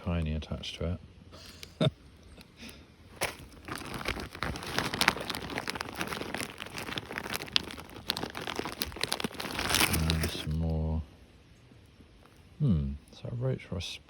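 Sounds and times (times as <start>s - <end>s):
plastic bags crinkling: 3.1s - 10.6s.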